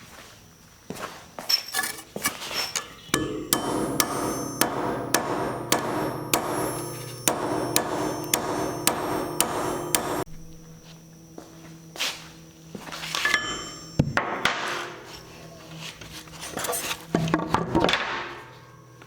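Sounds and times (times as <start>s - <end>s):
steady hum: 1.8s - 17.4s
hammer blows: 3.1s - 11.6s.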